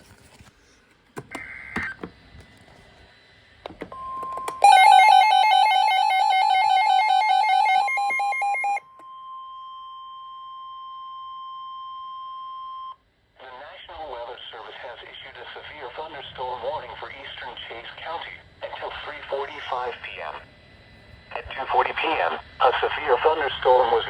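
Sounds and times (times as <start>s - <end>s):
steady alarm tone: 4.0s - 8.9s
pulsed electronic beeping alarm: 4.0s - 13.0s.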